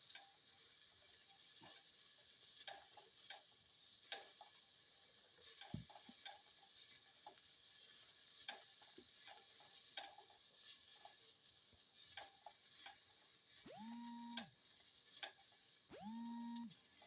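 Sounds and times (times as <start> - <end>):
spatula scraping a pan: 0.0 - 13.6
faint sizzle: 0.0 - 17.0.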